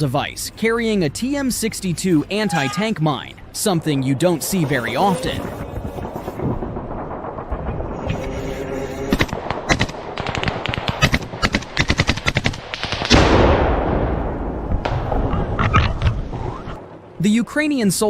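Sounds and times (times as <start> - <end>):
loud blast: 3.2 - 15.3
gunshots cracking: 3.8 - 15.6.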